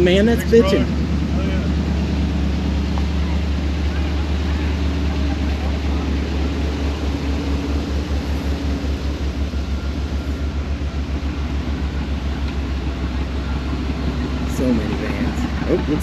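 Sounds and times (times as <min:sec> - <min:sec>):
vehicle engines idling: 0:00.0 - 0:16.0.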